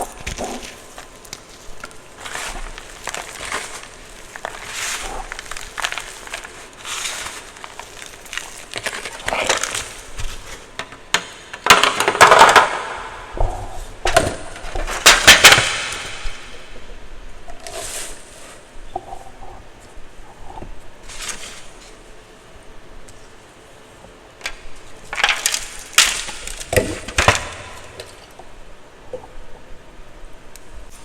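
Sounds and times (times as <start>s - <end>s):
chalk block crunching: 0.0s - 10.8s.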